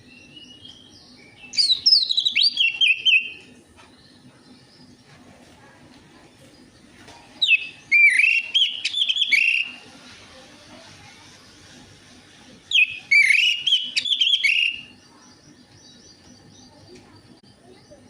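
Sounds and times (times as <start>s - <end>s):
thrush singing whistled phrases: 1.4s - 3.4s, 7.4s - 9.8s, 12.7s - 14.9s.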